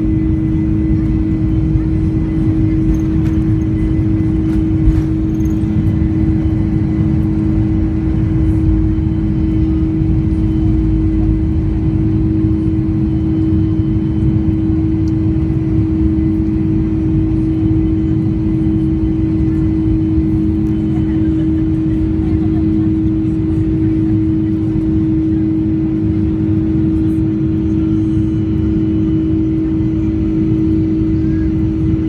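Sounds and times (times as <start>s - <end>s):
jet engines rumbling on takeoff: 0.0s - 32.0s.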